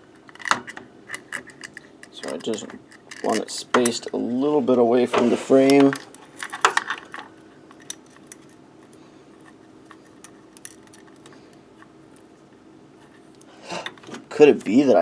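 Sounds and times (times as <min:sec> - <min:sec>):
faint steady hum: 0:00.0 - 0:15.0
small parts and tools clicking: 0:00.2 - 0:04.2, 0:05.7 - 0:12.3.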